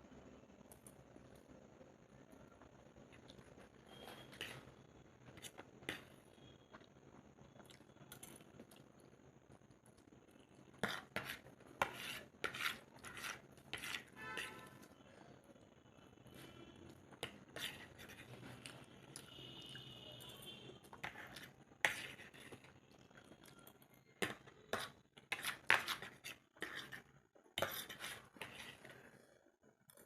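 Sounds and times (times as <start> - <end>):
cutlery scraping on plate: 10.8 - 14.8.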